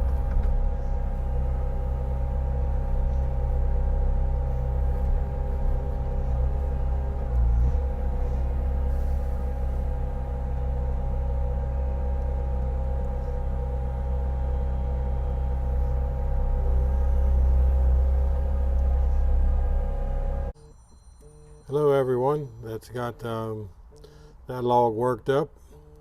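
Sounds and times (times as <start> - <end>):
diesel engine running: 0.0 - 20.6.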